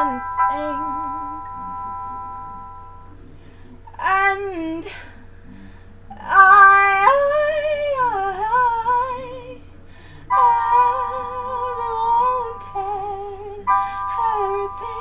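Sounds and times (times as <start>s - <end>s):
woman singing long notes: 0.0s - 1.7s, 6.1s - 15.0s.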